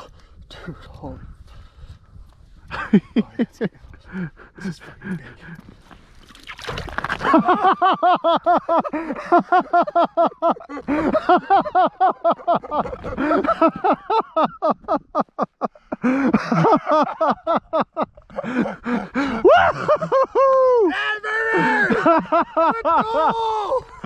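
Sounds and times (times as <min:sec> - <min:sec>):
man laughing hard: 0:02.7 - 0:04.3, 0:07.2 - 0:24.0.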